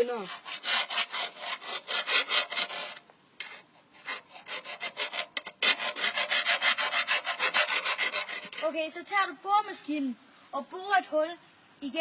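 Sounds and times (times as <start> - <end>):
file rasping on metal: 0.0 - 8.7.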